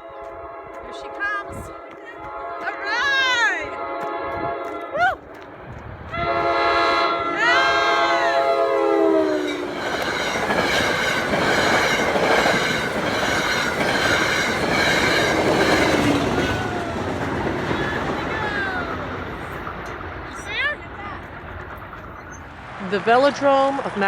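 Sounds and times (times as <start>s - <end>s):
train horn chord: 0.0s - 4.9s, 6.2s - 9.8s
rail cars rumbling and clattering: 0.0s - 24.0s.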